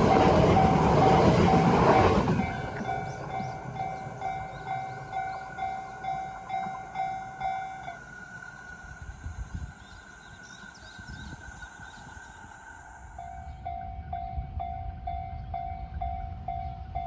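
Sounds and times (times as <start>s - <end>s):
train passing: 0.0s - 13.3s
level crossing warning bell: 0.0s - 13.6s.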